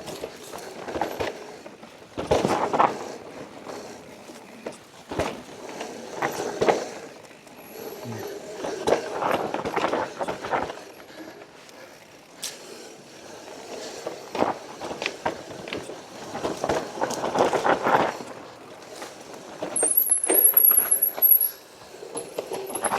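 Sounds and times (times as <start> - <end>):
mountain bike clattering: 14.4 - 22.9.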